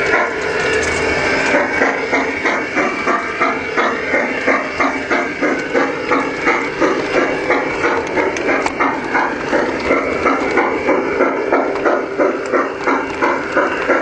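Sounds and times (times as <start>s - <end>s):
model train running: 0.0s - 14.0s.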